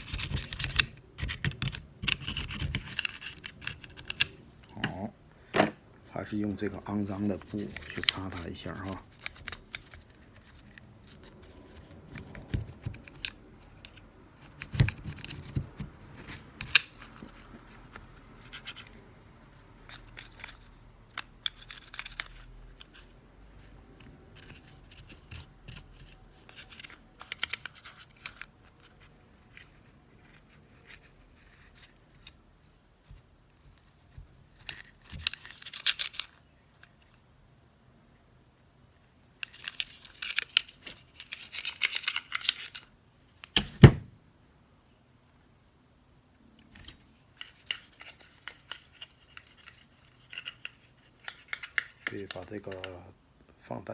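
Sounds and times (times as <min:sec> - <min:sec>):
light clicks and knocks of handling: 0:46.5 - 0:53.1.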